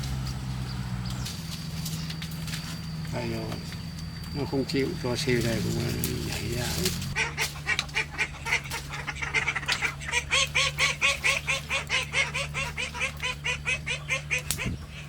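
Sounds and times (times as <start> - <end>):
ducks quacking: 5.0 - 15.0.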